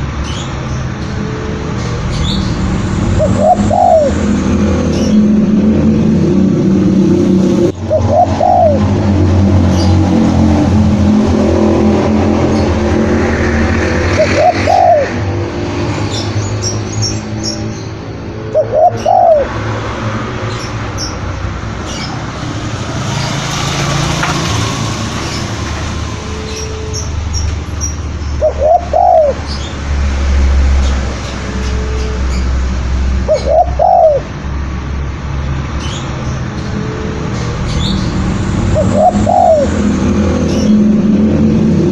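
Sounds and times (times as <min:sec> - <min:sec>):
dove cooing: 0:03.1 - 0:05.2, 0:07.8 - 0:09.2, 0:14.1 - 0:15.3, 0:18.4 - 0:19.9, 0:28.4 - 0:29.6, 0:33.3 - 0:34.4, 0:38.7 - 0:39.9
small birds chirping: 0:26.3 - 0:29.8.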